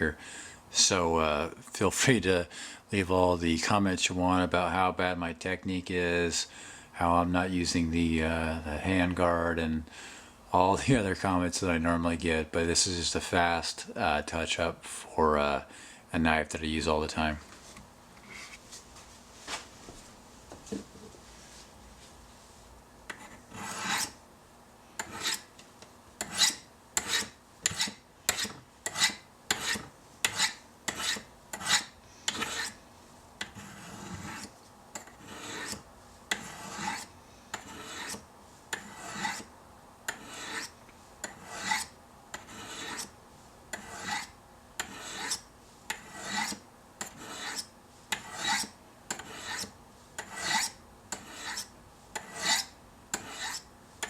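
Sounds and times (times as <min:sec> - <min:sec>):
knife scraping on ceramic rods: 0:23.1 - 0:24.2, 0:25.0 - 0:25.5, 0:26.2 - 0:32.8, 0:33.4 - 0:39.5, 0:40.1 - 0:43.1, 0:43.7 - 0:53.7.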